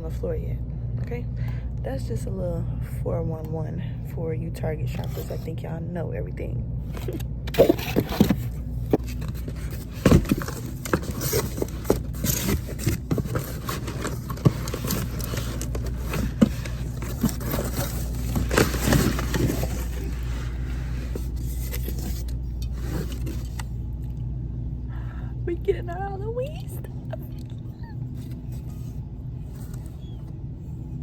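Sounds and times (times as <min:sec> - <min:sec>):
low background hum: 0:00.0 - 0:31.0
boxes being unpacked: 0:06.9 - 0:23.8.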